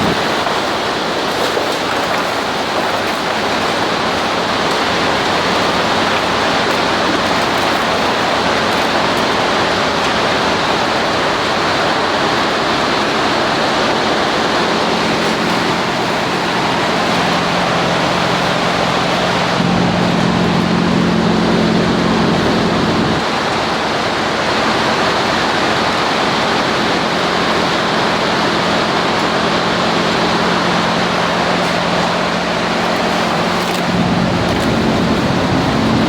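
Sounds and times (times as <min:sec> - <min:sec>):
loud rushing machinery noise: 0:00.0 - 0:36.0
low hum: 0:14.6 - 0:23.3, 0:29.5 - 0:36.0.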